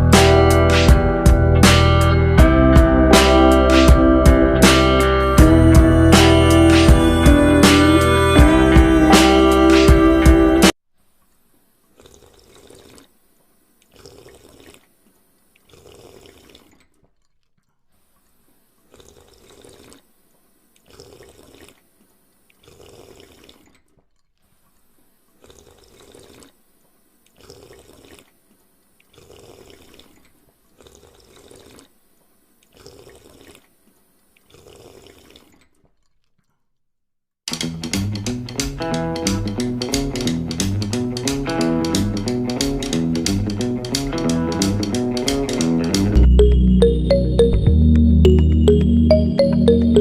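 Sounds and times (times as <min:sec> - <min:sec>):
water gushing in spurts: 0:11.9 - 0:13.2, 0:13.8 - 0:17.3, 0:18.2 - 0:32.0, 0:32.6 - 0:35.8.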